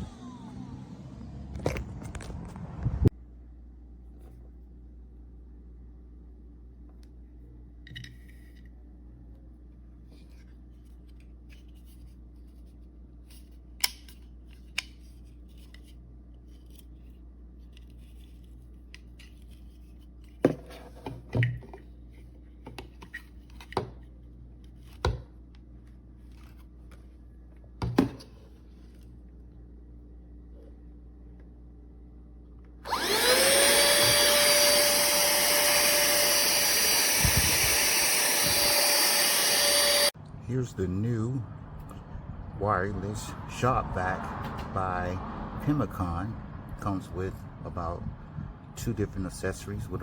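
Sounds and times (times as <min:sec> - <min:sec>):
steady low hum: 0:24.0 - 0:50.0.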